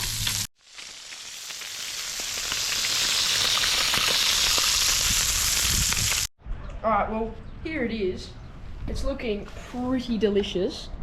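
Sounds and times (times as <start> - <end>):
fish sizzling on hotplate: 0.0 - 6.3.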